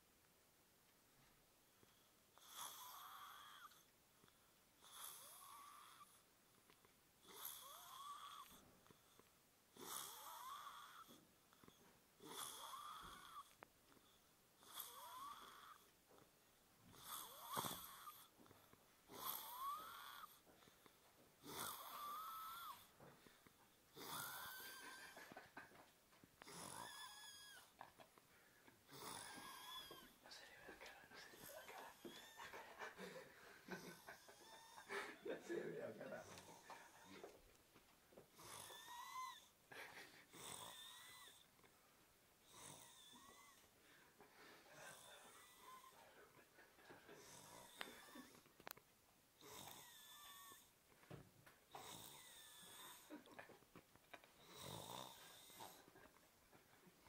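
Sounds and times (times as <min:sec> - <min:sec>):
faint slow snoring: 0:01.9 - 0:06.3, 0:07.2 - 0:15.9, 0:16.9 - 0:20.8, 0:21.4 - 0:23.3, 0:23.9 - 0:25.5, 0:26.4 - 0:27.8, 0:28.8 - 0:30.4, 0:31.1 - 0:37.4, 0:38.3 - 0:41.5, 0:42.4 - 0:43.8, 0:44.6 - 0:46.4, 0:47.0 - 0:48.5, 0:49.4 - 0:50.8, 0:51.7 - 0:53.3, 0:54.4 - 0:56.0.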